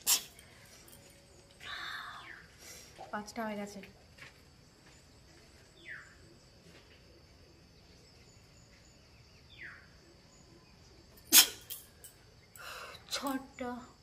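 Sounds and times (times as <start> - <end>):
woman sneezing: 11.3 - 11.7.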